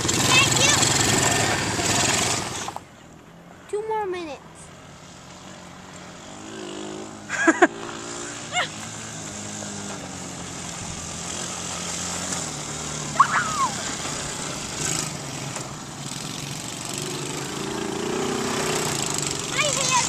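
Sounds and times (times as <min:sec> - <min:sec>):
small atv engine running: 0:00.0 - 0:03.5, 0:04.7 - 0:20.0
high sliding squeals: 0:13.0 - 0:14.2.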